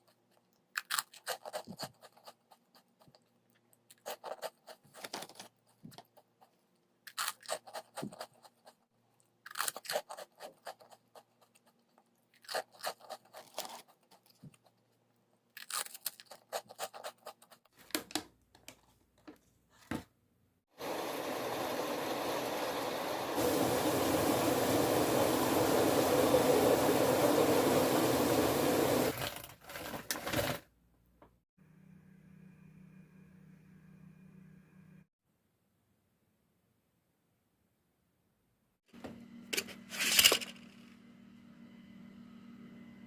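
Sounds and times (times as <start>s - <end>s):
person chewing crunchy food: 0.0s - 17.8s.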